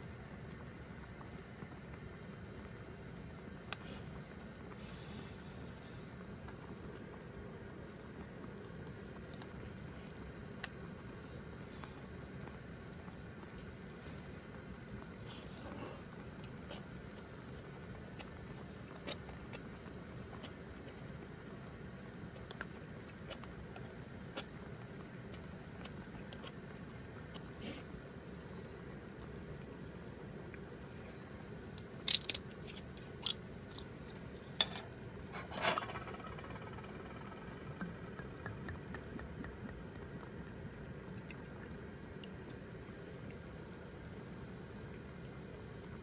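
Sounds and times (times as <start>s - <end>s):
person chewing and crunching food: 15.3s - 21.1s.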